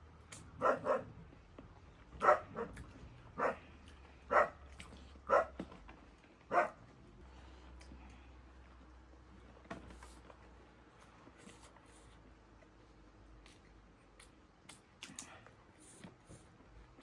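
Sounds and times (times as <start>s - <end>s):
dog barking: 0.6s - 1.2s, 2.2s - 3.7s, 4.3s - 4.6s, 5.2s - 5.6s, 6.5s - 6.8s.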